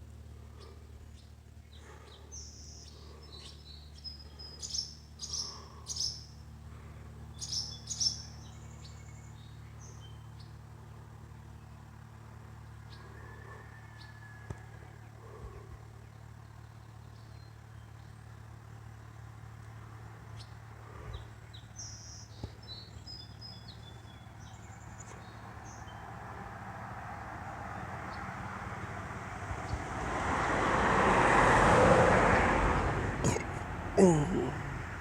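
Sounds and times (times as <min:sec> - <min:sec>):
faint bird chirps: 0:00.5 - 0:06.4
car passing: 0:25.5 - 0:35.0.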